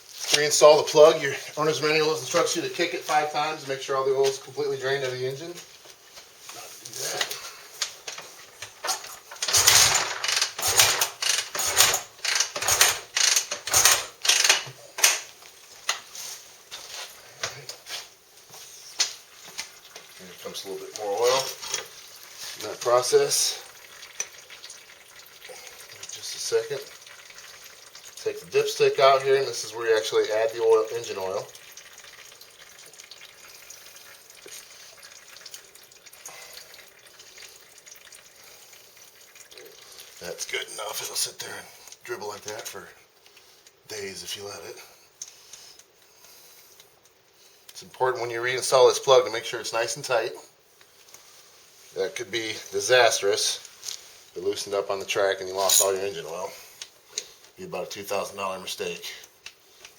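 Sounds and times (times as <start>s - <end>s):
oil dribbling from drain hole: 0.1s - 16.1s, 19.0s - 47.0s
motorcycle kick-starter ratcheting: 8.8s - 15.3s.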